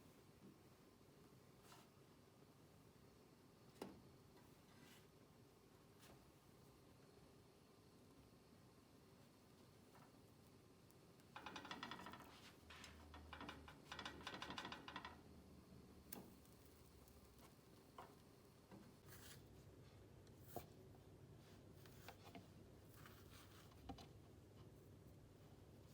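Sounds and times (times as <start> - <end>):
rustling and handling noises: 16.2 - 25.9.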